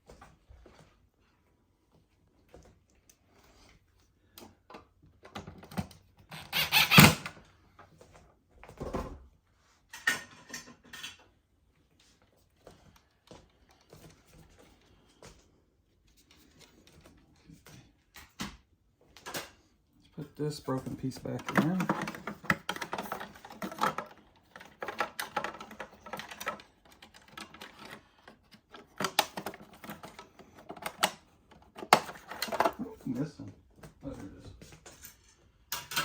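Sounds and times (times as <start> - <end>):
plastic parts clicking and rattling: 20.7 - 33.1.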